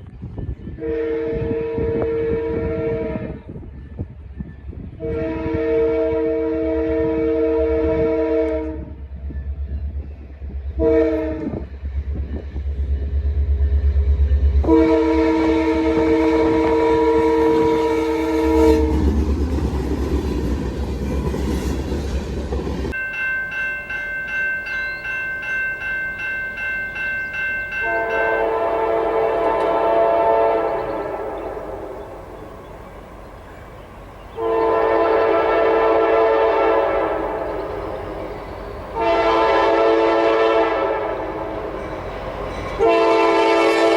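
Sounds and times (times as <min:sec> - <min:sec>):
locomotive engine rumble: 0:00.0 - 0:43.9
train rattling past: 0:00.0 - 0:43.9
locomotive air horn chord: 0:00.8 - 0:03.4, 0:05.0 - 0:09.0, 0:10.8 - 0:11.6, 0:14.6 - 0:19.2, 0:27.8 - 0:32.2, 0:34.4 - 0:37.7, 0:39.0 - 0:41.8, 0:42.8 - 0:43.9.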